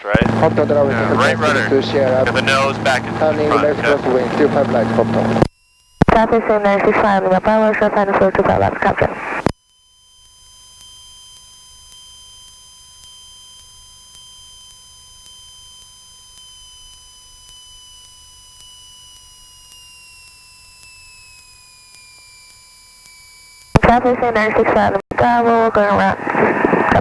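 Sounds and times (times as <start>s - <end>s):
steady electronic tone: 0.0s - 8.2s.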